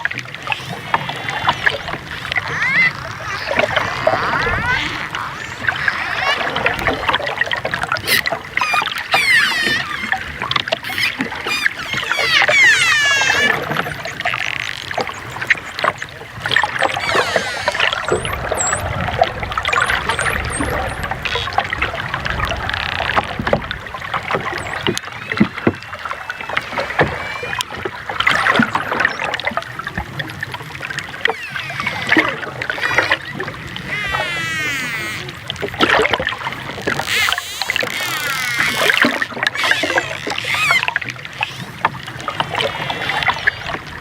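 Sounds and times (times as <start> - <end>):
dolphins whistling: 0.4 - 22.9, 24.4 - 30.0, 30.6 - 35.5, 37.0 - 44.0
dolphin clicks: 8.0 - 18.9, 31.2 - 43.7.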